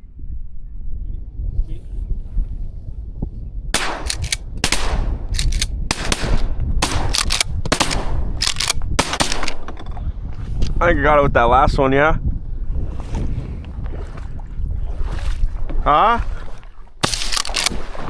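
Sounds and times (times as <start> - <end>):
shotgun blasts: 3.8 - 9.8, 17.0 - 17.8.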